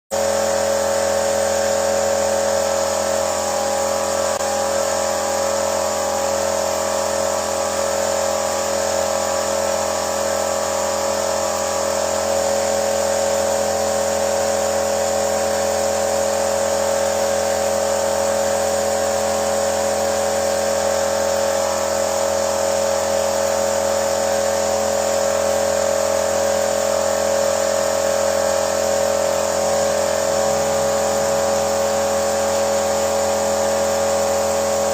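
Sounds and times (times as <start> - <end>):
car engine running: 26.4 - 34.9
steady whine: 27.2 - 34.9.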